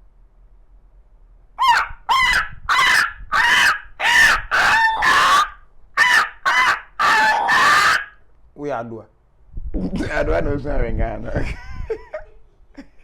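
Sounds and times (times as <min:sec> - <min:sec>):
man imitating animal calls: 0:01.6 - 0:08.1.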